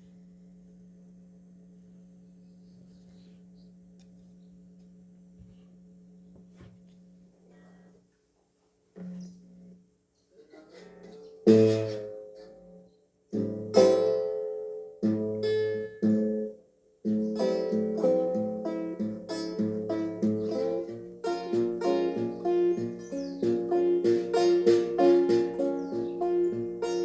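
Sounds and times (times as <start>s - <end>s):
guitar picking: 11.1s - 12.7s, 13.4s - 16.5s, 17.1s - 27.0s
slide guitar plucked chords: 11.5s - 12.4s, 17.1s - 27.0s.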